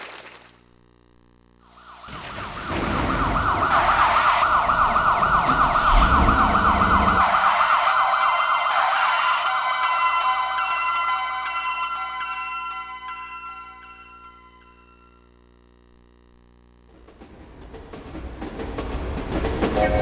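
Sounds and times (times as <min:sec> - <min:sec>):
synthesized yelping siren: 0:01.7 - 0:10.9
low rumble: 0:02.0 - 0:08.4
synthesized bell-like chimes: 0:09.0 - 0:15.2.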